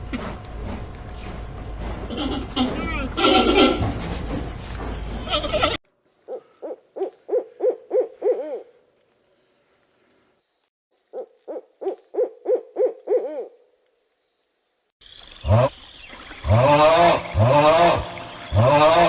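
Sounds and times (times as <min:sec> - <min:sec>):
owl hooting: 0:06.2 - 0:08.8, 0:11.1 - 0:13.6.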